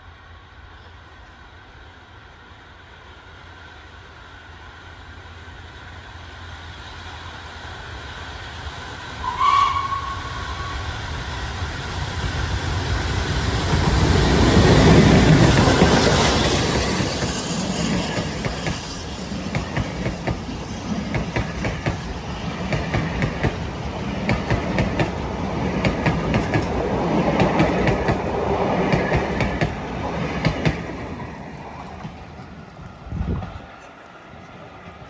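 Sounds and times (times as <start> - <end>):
train wheels clicking over rail joints: 11.9 - 35.0.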